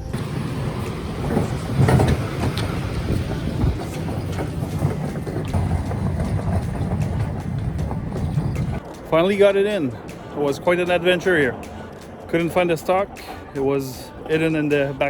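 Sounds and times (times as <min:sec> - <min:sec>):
van road and engine noise: 0:00.0 - 0:09.0
rattles and knocks: 0:00.1 - 0:08.8.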